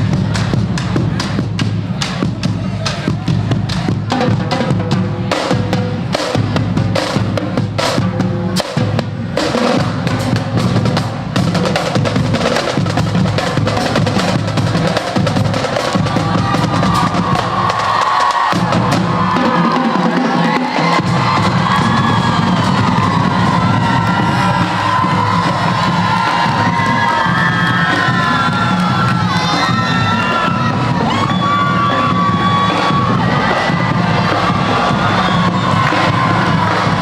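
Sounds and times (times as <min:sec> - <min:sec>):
loud drum-driven music: 0:00.0 - 0:37.0.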